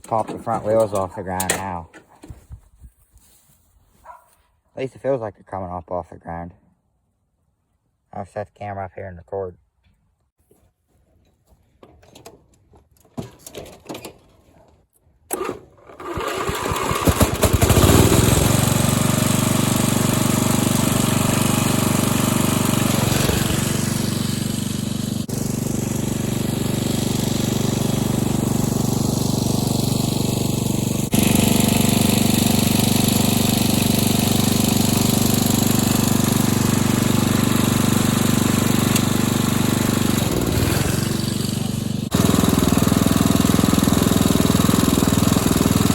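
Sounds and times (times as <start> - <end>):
riding lawnmower engine running: 0.0 - 2.0, 15.3 - 45.9.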